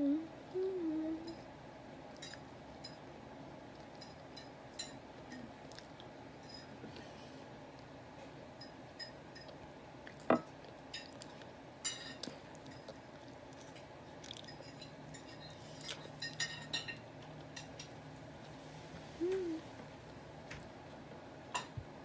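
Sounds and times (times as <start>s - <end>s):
cutlery clinking on a plate: 16.1s - 17.0s.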